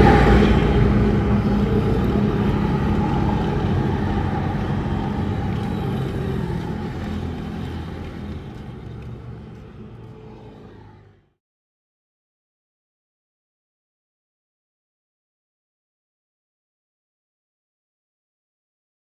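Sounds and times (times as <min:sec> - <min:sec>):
motorcycle engine running: 0:00.0 - 0:10.2.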